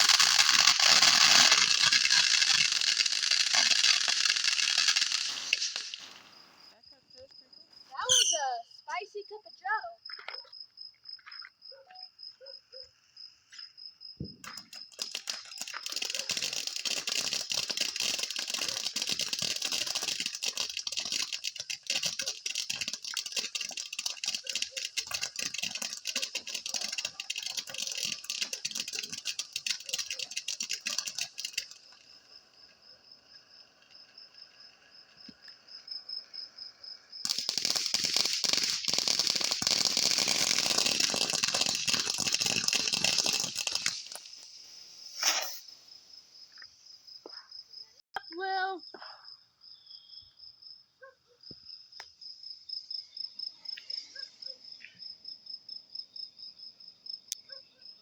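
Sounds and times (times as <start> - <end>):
fireworks crackling: 0.0 - 9.9, 14.2 - 46.8
crickets chirping: 0.0 - 58.0.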